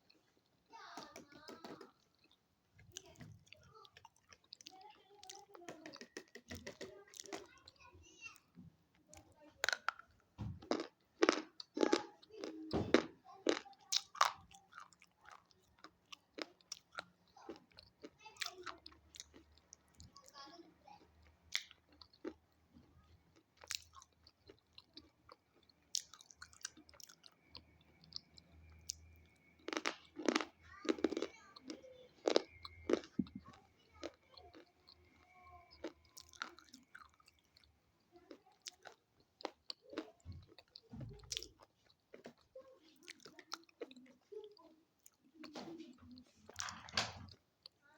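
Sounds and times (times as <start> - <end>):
person crunching and chewing: 2.0 - 7.6, 9.6 - 10.0, 10.6 - 19.8, 21.5 - 22.5, 23.3 - 44.2.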